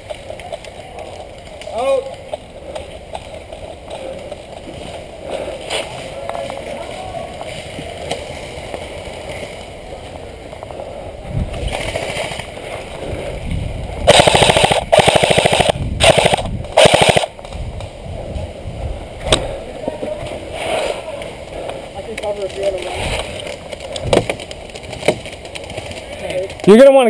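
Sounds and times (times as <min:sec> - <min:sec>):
airsoft gun full-auto bursts: 0:14.1 - 0:17.4.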